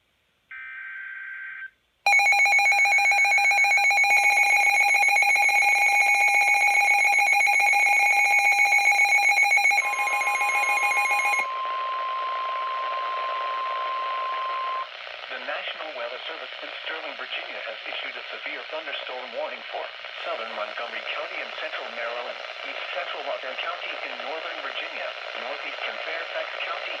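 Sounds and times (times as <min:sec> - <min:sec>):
rapidly pulsing alarm beep: 0:02.1 - 0:14.9
steady warning tone: 0:02.1 - 0:14.9.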